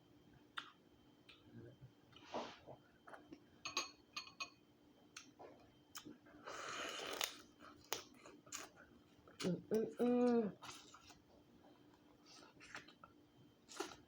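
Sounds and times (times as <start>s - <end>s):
wet chewing and mouth noises: 0.5s - 1.5s, 6.9s - 14.0s.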